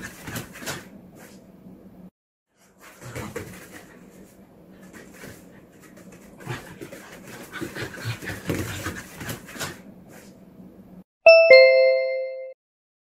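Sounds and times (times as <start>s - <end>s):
dog panting: 3.0s - 9.8s
bright chime: 11.3s - 12.6s.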